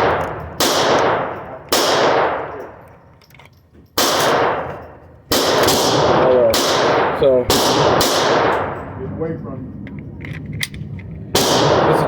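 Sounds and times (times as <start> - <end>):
pistol shots echoing: 0.0 - 3.0, 4.0 - 9.0, 11.3 - 12.0.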